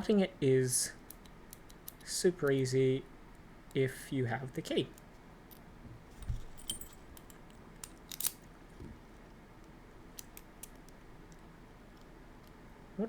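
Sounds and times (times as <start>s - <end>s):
soft bump: 5.8s - 6.7s
metallic clicks of lock and key: 6.6s - 8.4s.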